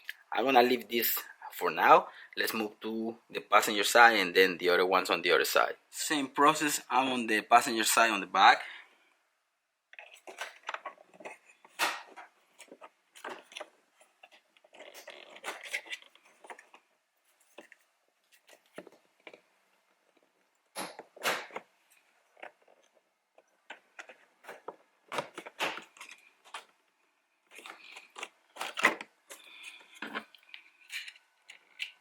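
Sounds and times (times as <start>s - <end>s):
plastic scraping: 9.9s - 26.8s, 27.5s - 32.0s.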